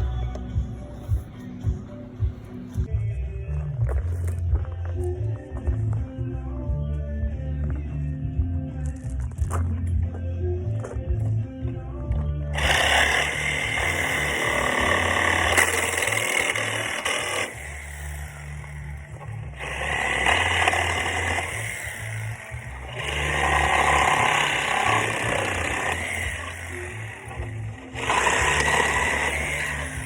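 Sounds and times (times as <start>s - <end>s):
background music: 0.0s - 30.0s
reciprocating saw cutting nails: 12.6s - 30.0s.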